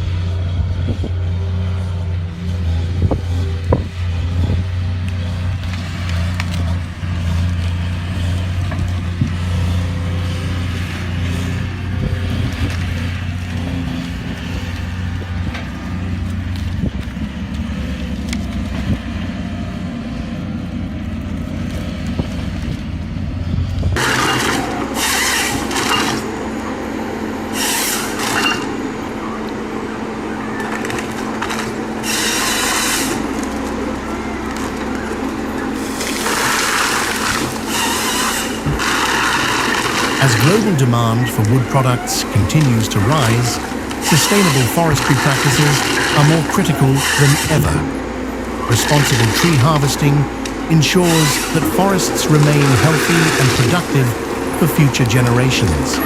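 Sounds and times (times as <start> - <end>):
heavy machine engine droning: 0.0 - 56.0
machine humming: 0.0 - 56.0
bursts of rasping noise: 23.9 - 56.0.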